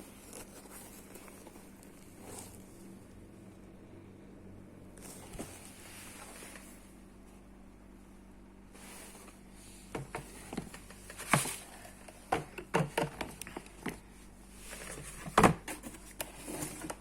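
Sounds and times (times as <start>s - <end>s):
sneaker handling knocks and rustles: 9.1s - 14.0s, 14.7s - 17.0s.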